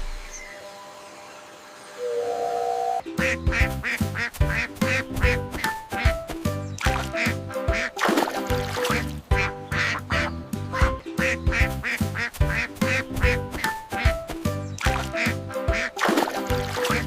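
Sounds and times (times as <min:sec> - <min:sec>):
music with steady beat: 0:03.0 - 0:16.1
bright quack-like strokes: 0:03.2 - 0:06.1, 0:08.7 - 0:14.1.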